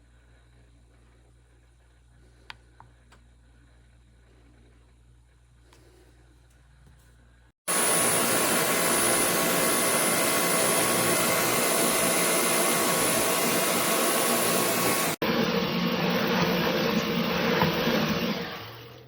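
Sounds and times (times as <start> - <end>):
vacuum cleaner running: 7.6 - 19.0.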